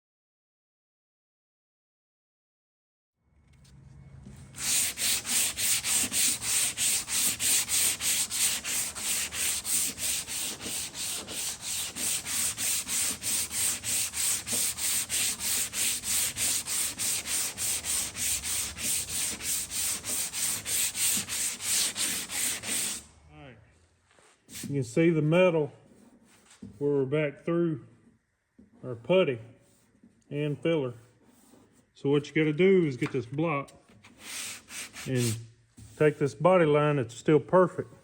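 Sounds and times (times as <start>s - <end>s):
sandpaper strokes on sanding block: 4.6s - 23.1s, 34.1s - 35.4s.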